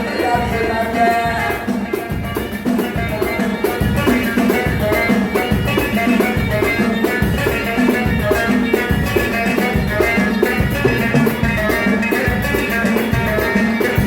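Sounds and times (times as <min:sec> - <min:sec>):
hand drums: 0:00.0 - 0:14.0.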